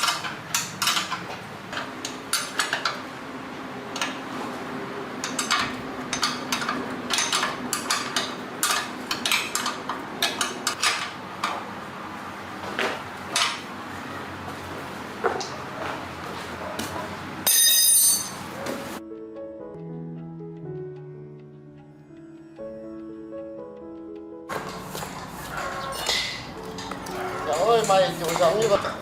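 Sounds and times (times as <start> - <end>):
metal tools clinking on metal: 5.2 - 11.2, 17.4 - 18.5, 24.5 - 29.0.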